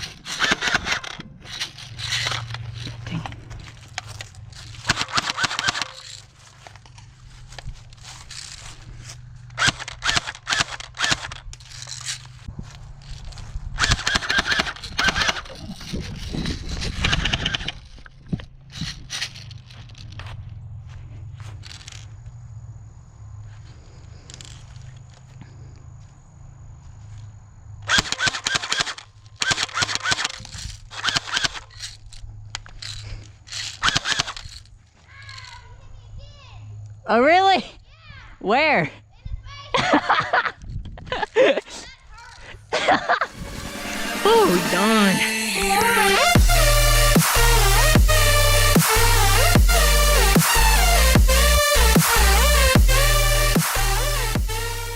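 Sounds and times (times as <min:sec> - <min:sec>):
airsoft guns firing bursts: 0:04.7 - 0:06.1, 0:09.0 - 0:11.4, 0:13.8 - 0:15.6, 0:27.9 - 0:31.6.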